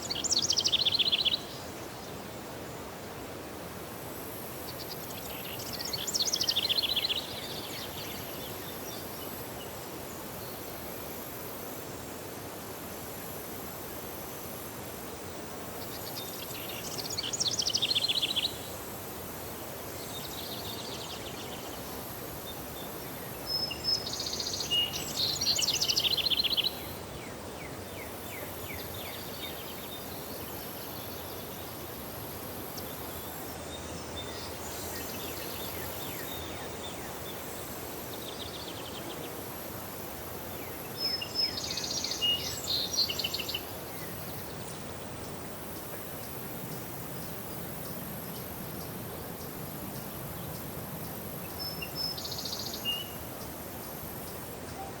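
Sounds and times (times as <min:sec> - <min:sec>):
outdoor background hiss: 0:00.0 - 0:55.0.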